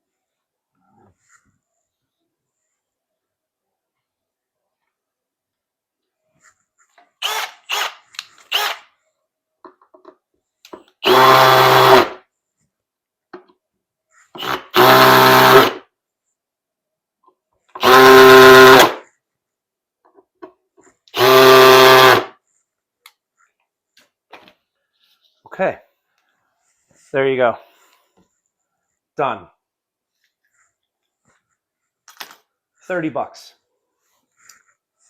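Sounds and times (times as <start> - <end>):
cordless drill driving screws: 7.2 - 8.9, 11.0 - 12.2, 14.4 - 15.8, 17.8 - 19.0, 21.1 - 22.3.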